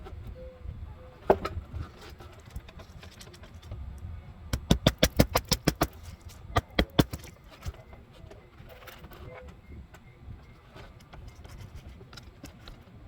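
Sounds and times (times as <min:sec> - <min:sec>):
wind rumble on microphone: 0:00.0 - 0:13.0.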